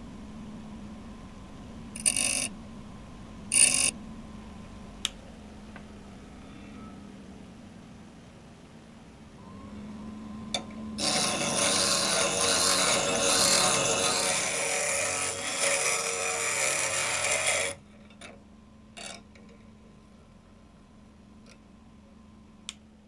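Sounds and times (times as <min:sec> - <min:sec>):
metal grinding rasp: 0:02.0 - 0:02.5, 0:11.0 - 0:18.3, 0:19.0 - 0:19.2
bench grinder motor hum: 0:09.8 - 0:17.8.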